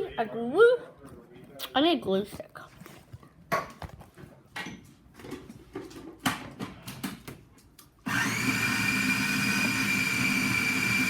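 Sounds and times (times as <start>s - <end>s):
blender running with whine: 8.0s - 11.0s.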